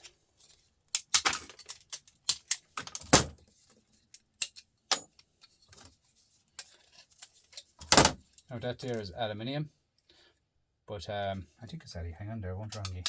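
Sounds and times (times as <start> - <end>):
small metal parts clinking: 0.4 - 5.6.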